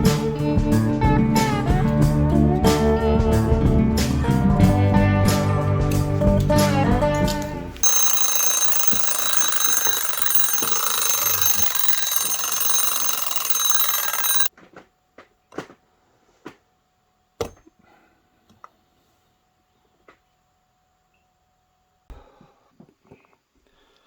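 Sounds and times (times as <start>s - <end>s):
alarm ringing: 7.8s - 14.5s.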